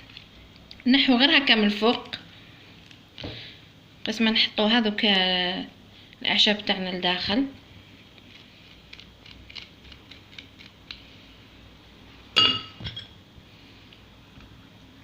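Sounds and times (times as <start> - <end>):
glassware clinking: 12.4 - 13.2.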